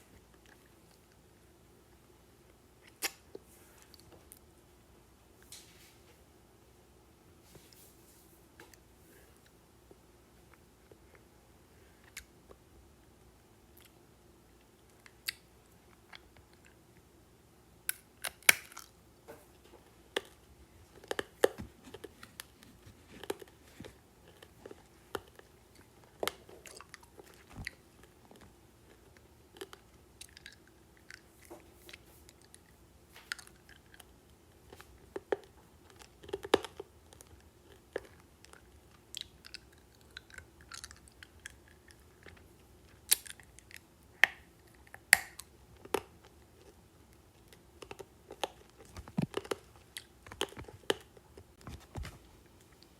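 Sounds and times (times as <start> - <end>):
candy crunching while chewing: 20.1 - 51.6.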